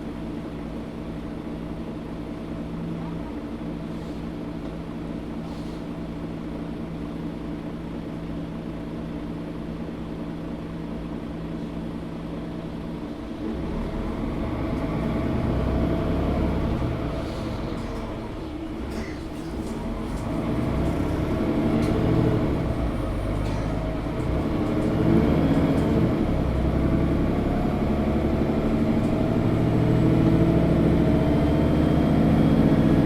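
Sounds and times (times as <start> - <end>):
bus engine humming: 9.7 - 33.0.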